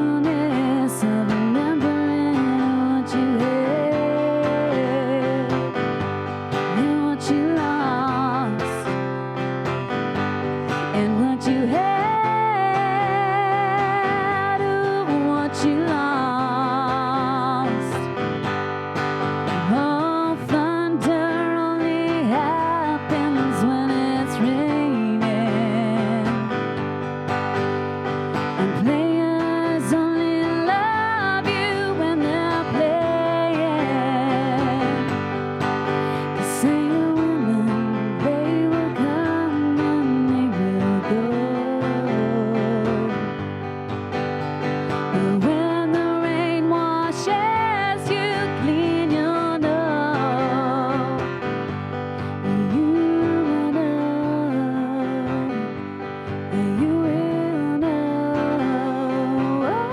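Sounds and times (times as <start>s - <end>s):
women singing in harmony: 0.0s - 5.8s, 36.2s - 43.1s, 52.4s - 55.5s, 56.5s - 59.9s
two women singing: 0.0s - 9.4s, 10.3s - 18.5s, 19.3s - 26.9s, 28.3s - 44.0s, 44.8s - 59.9s
acoustic guitar: 0.0s - 59.9s.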